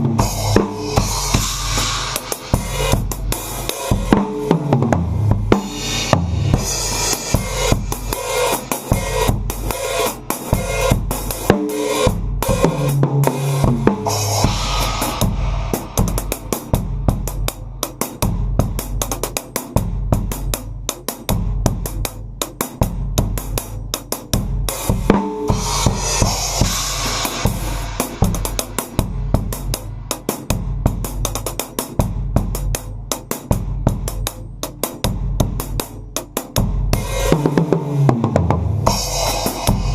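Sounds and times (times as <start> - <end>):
cymbal wash: 0.0 - 4.6, 5.6 - 19.0, 24.7 - 31.4, 37.0 - 37.6, 38.8 - 39.9
drum kit playing: 0.0 - 39.9.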